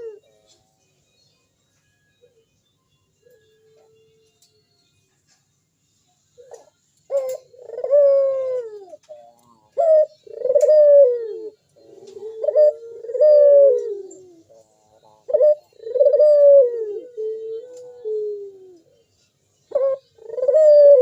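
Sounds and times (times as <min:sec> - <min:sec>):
dove cooing: 0:00.0 - 0:00.4, 0:06.4 - 0:19.0, 0:19.7 - 0:21.0.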